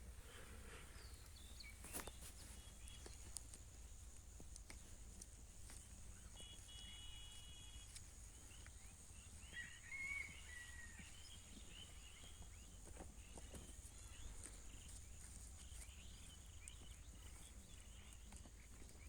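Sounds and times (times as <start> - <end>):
high insect drone: 5.0 - 9.2
bird whistles and chirps: 8.5 - 12.7.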